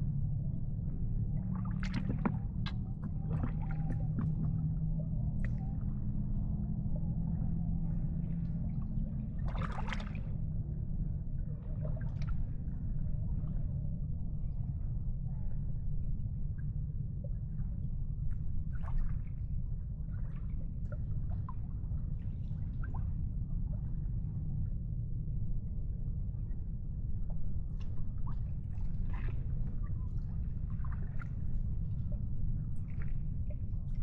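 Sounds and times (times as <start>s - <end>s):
steady low rumble: 0.0s - 34.0s
water lapping and gurgling: 1.0s - 13.7s, 17.2s - 24.3s, 27.2s - 34.0s.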